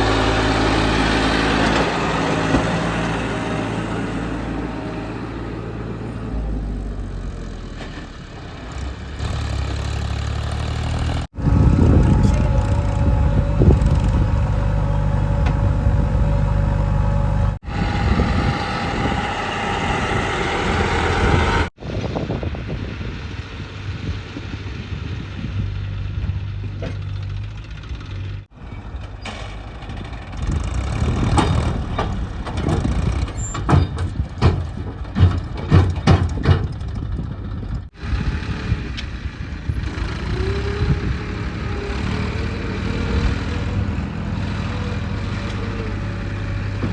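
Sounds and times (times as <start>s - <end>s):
engine revving: 0.0s - 21.8s, 29.7s - 33.4s, 37.9s - 46.9s
diesel engines running: 0.0s - 46.9s
sharp knocks and clanks: 29.2s - 37.2s.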